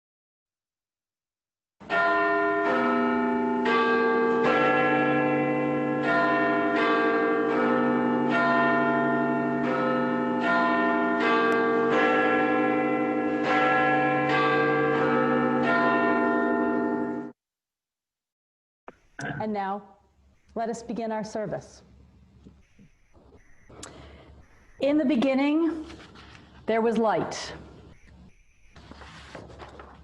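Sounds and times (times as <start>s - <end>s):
church bells pealing: 1.8s - 17.3s.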